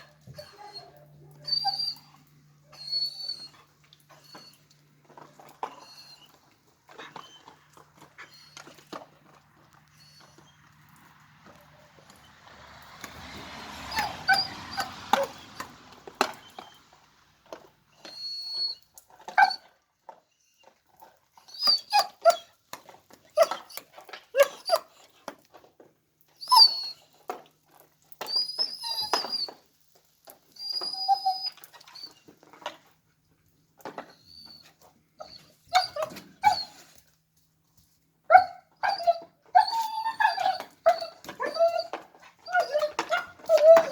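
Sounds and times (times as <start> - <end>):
dog whining and yipping: 0.0 - 10.7, 13.8 - 17.0, 17.9 - 22.6, 23.2 - 25.3, 26.3 - 27.4, 28.2 - 29.8, 30.4 - 32.8, 33.8 - 37.1, 38.3 - 43.9.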